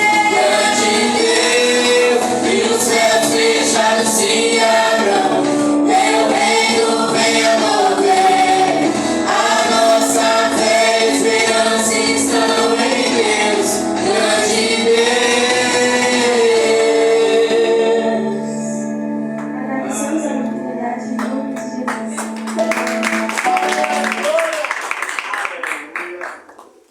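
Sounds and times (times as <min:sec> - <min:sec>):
group singing worship song: 0:00.0 - 0:19.0.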